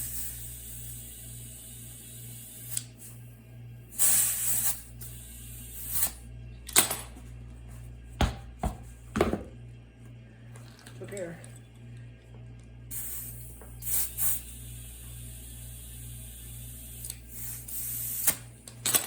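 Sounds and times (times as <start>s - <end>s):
compressed air hissing into tire: 3.9s - 6.2s, 12.9s - 18.5s.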